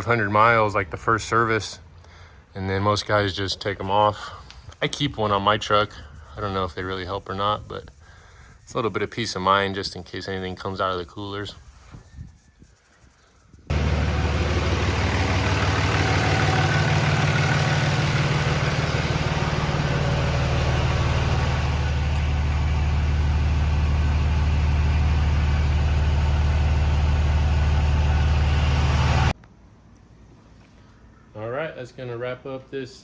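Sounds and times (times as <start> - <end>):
diesel engine running: 13.7 - 29.4.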